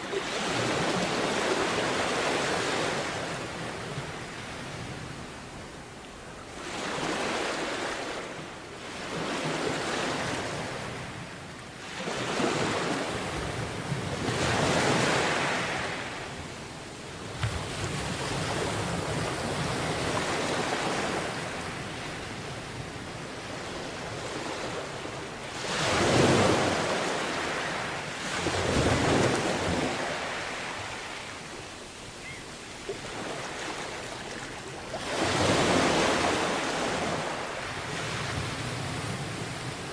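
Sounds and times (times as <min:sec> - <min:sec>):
sea waves breaking on a beach: 0:00.0 - 0:39.9
wind noise on microphone: 0:12.3 - 0:24.3, 0:37.0 - 0:39.9.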